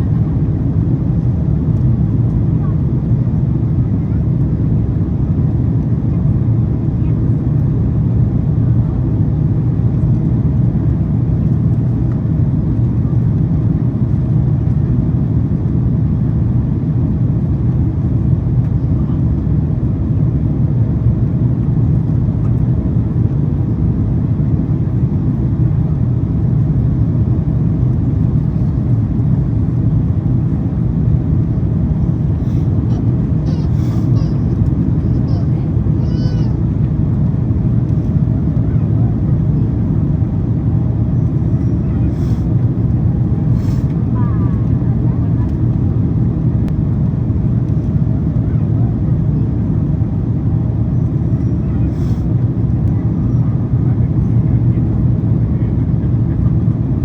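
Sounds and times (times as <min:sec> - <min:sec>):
airliner cabin airflow and engine drone: 0:00.0 - 0:57.0.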